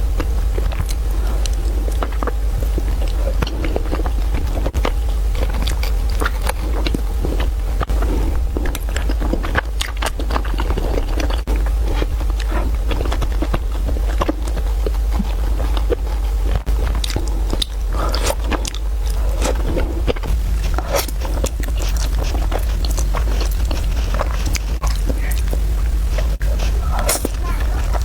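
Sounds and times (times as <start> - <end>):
chewing noodles: 0.1 - 28.0
steady low hum: 20.2 - 28.0
wet mouth smacks and clicks: 20.4 - 28.0.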